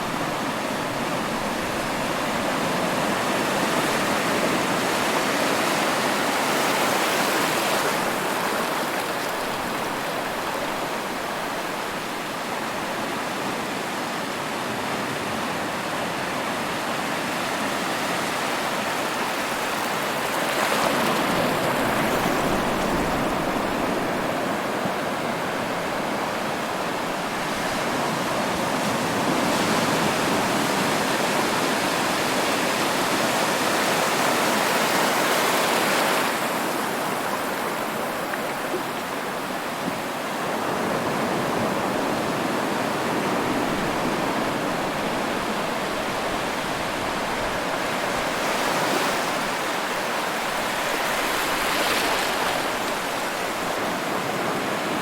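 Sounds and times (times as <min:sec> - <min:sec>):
waves breaking on shore: 0:00.0 - 0:55.0.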